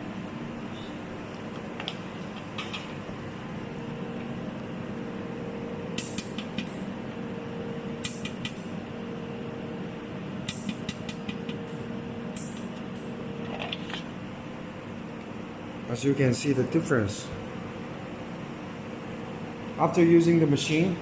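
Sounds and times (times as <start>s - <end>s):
cooling fan hum: 0.0s - 21.0s
laser welder sharp clicks: 6.0s - 6.8s, 8.0s - 8.7s, 10.4s - 11.6s, 12.3s - 13.0s.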